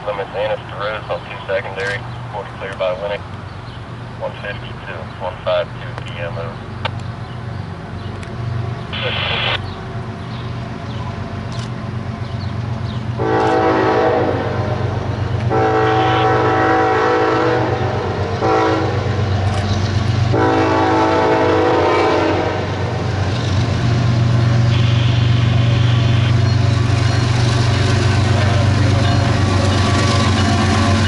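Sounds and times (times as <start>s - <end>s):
locomotive engine running: 0.0s - 31.0s
locomotive air horn: 13.2s - 19.2s, 20.3s - 22.8s.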